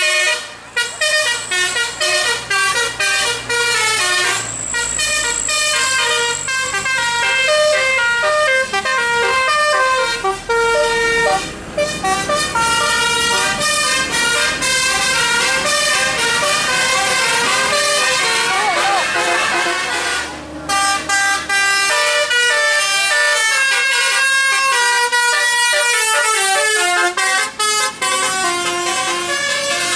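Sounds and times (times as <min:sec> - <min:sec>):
bus engine rumble: 0:00.0 - 0:29.9
musical air horn melody: 0:00.0 - 0:29.9.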